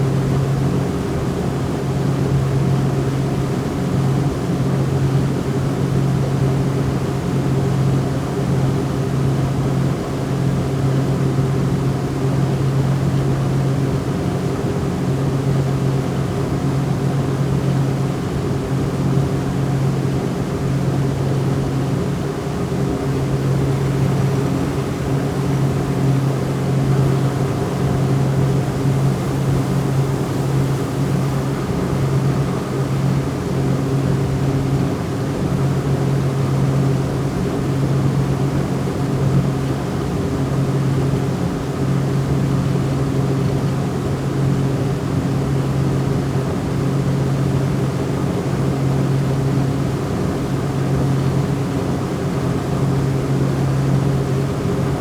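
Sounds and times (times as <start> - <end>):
motorboat engine droning: 22.7 - 39.7.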